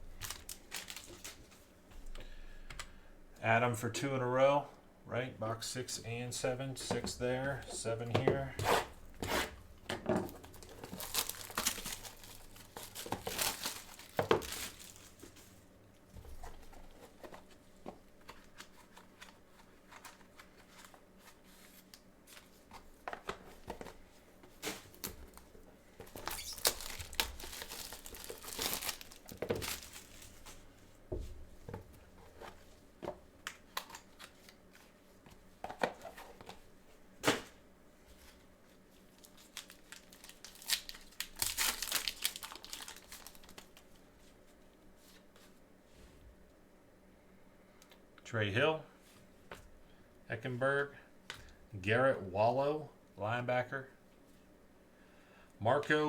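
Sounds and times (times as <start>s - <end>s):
wrapping crinkling and tearing: 0.0s - 1.7s, 10.3s - 15.6s, 24.6s - 30.8s, 39.0s - 44.0s.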